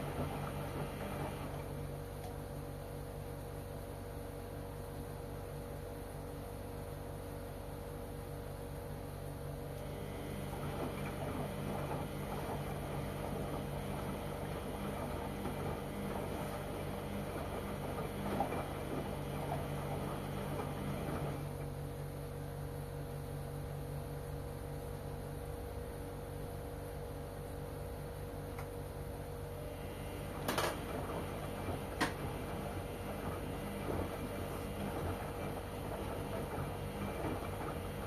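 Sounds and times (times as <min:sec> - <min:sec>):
washing machine low hum: 0:00.0 - 0:38.0
washing machine drum turning: 0:10.4 - 0:21.6, 0:30.1 - 0:38.0
water and clothes sloshing: 0:30.8 - 0:38.0.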